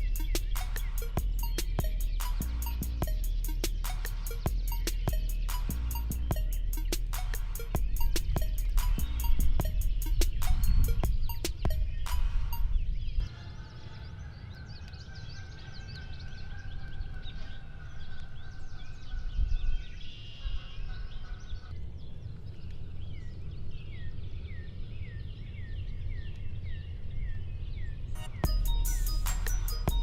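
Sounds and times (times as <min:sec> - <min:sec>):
songbirds chirping: 0:00.0 - 0:30.0
wind rumble on microphone: 0:07.8 - 0:13.4, 0:14.9 - 0:28.2.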